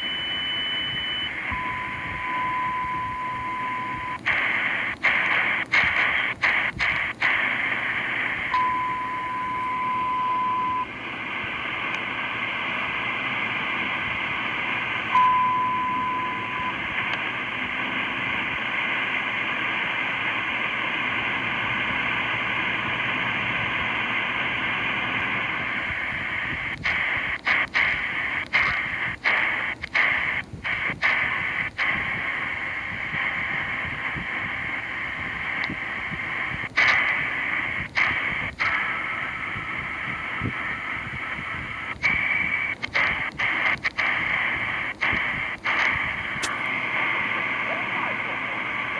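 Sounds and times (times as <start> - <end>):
morse code tone: 0.0 - 4.4, 8.5 - 10.9, 15.1 - 16.8
radio receiver hiss: 0.0 - 48.9
sharp crackling clicks: 4.2 - 8.5, 26.7 - 32.0, 35.5 - 35.8, 36.7 - 39.0, 41.9 - 46.8.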